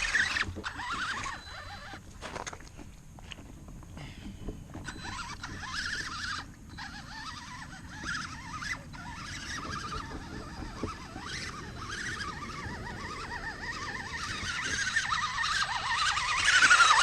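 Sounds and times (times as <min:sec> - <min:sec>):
electric motor whining: 0:00.0 - 0:02.1, 0:04.8 - 0:17.0
low drivetrain rumble: 0:00.0 - 0:17.0
wheels churning in mud: 0:00.0 - 0:17.0.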